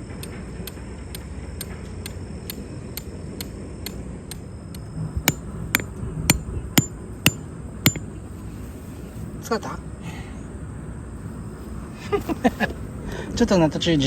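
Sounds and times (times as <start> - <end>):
hammer striking metal: 5.3 - 8.1.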